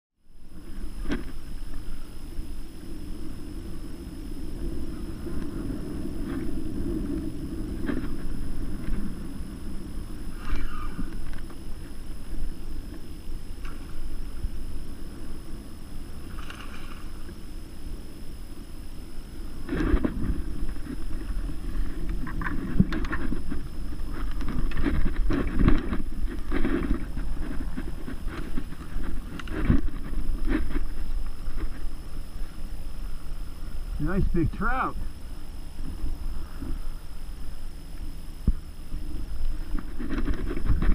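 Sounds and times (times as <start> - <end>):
wind rumbling on microphone: 0.2 - 40.9.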